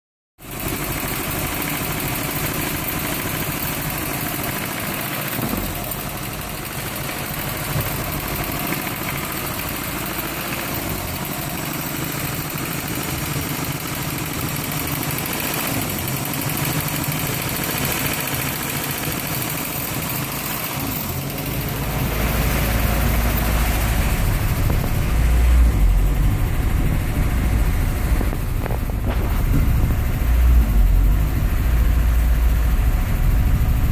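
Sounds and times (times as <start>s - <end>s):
car engine idling roughly: 0.4s - 33.9s
deep low rumble: 22.1s - 33.9s.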